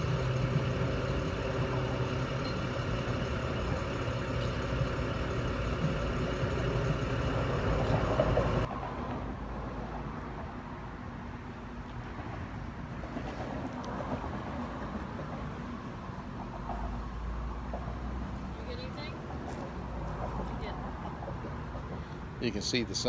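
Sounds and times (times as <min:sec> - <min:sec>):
motor humming: 0:00.0 - 0:08.7.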